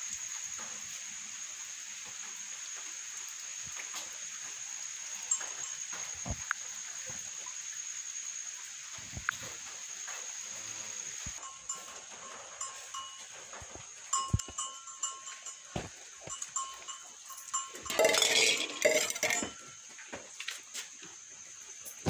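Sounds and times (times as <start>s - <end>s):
small bell tinkling: 5.2s - 6.2s, 11.4s - 19.9s.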